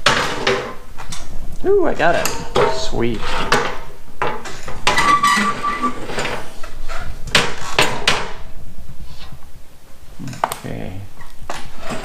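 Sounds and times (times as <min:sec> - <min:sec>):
steel tools clanking: 0:02.0 - 0:06.8.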